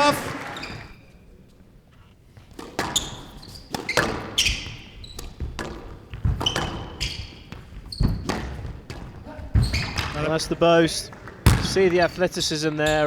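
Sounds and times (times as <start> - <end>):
shoes squeaking on wooden floor: 0.0 - 13.0
squash ball striking rackets and walls: 2.4 - 12.2.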